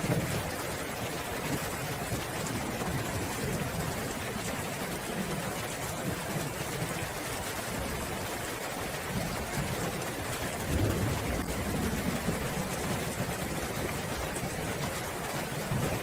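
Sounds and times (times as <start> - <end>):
steady rain: 0.0 - 16.0
distant thunder rumbling: 9.2 - 16.0.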